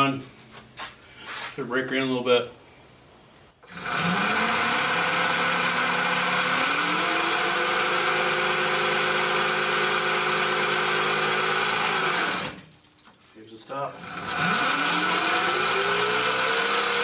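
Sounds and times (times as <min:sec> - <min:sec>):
electric motor whine: 0:03.7 - 0:12.6, 0:14.0 - 0:17.0.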